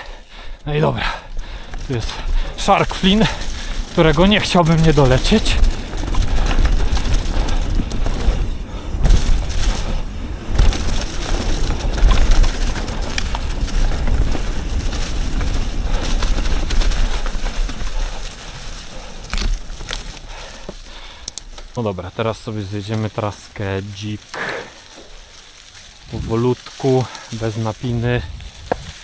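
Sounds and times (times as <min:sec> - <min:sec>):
mountain bike rattling: 0:00.2 - 0:29.0
wind rumbling on microphone: 0:01.2 - 0:29.0
knocks over rough ground: 0:10.4 - 0:21.8.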